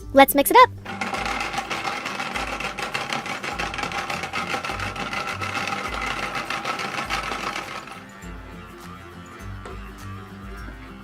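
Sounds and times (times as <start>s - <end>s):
toy blender motor buzzing: 0.8s - 8.4s.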